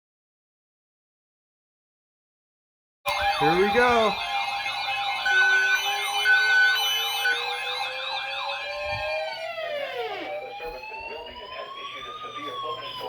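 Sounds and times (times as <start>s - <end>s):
emergency sirens yelping and wailing: 3.1s - 13.0s.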